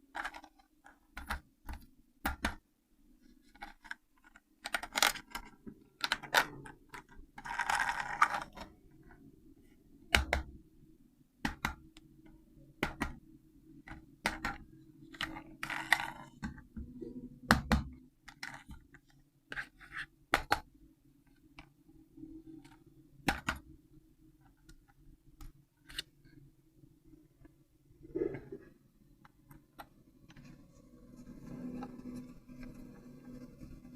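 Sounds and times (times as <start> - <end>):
faint steady hum: 0.0 - 33.9
toy handling clicks and knocks: 3.5 - 8.7.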